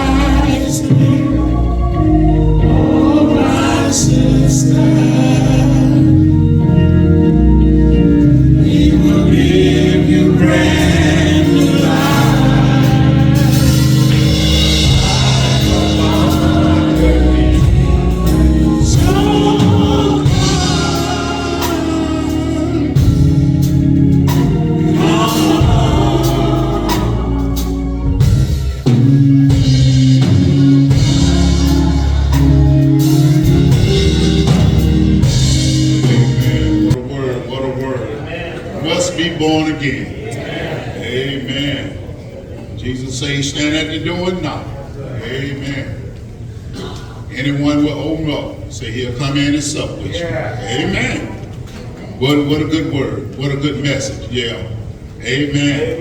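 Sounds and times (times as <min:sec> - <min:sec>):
choir singing: 0:00.0 - 0:37.0, 0:40.1 - 0:41.9
instrumental accompaniment: 0:00.0 - 0:37.1.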